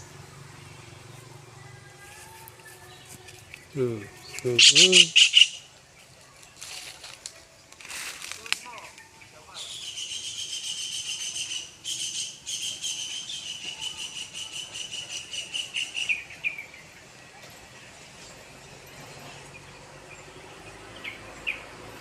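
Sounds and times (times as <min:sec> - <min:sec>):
bird high rapid trill: 0:04.5 - 0:05.7, 0:09.6 - 0:16.9.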